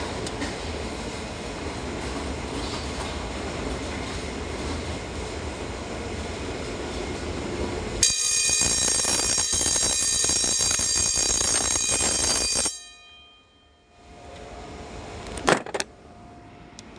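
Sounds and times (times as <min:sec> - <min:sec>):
fire alarm bell ringing: 0:08.0 - 0:14.2.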